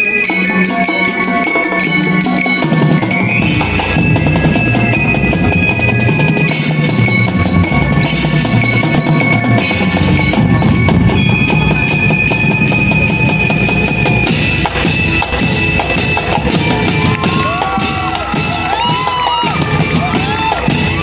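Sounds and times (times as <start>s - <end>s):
drumline: 0.0s - 21.0s
glockenspiel and marimba: 0.0s - 21.0s
marching band playing: 0.0s - 21.0s.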